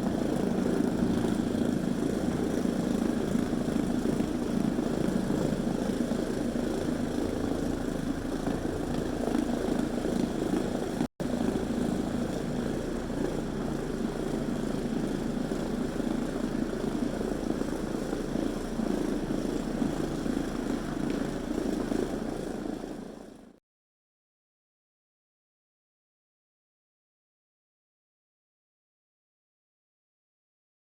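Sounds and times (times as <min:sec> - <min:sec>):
floor machine motor drone: 0:00.0 - 0:23.6.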